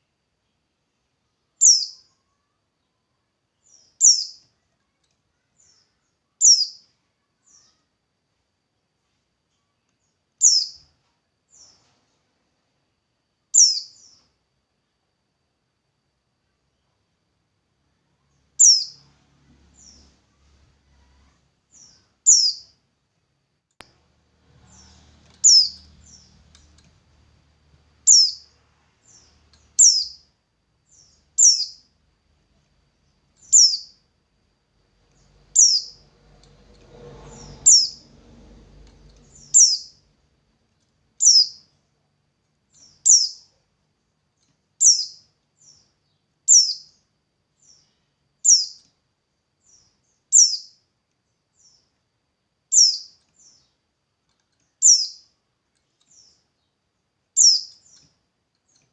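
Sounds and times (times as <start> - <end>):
faint low rumble: 7.0 - 45.5.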